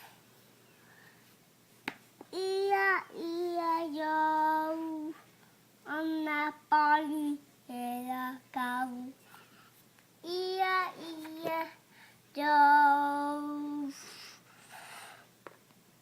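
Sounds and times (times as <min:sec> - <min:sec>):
child singing long notes: 0:02.3 - 0:05.2, 0:12.4 - 0:14.2.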